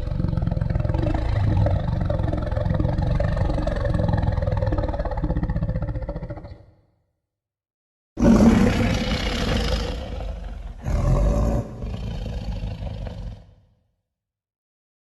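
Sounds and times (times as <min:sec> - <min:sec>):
cartoon dragon roar: 0:08.2 - 0:13.6.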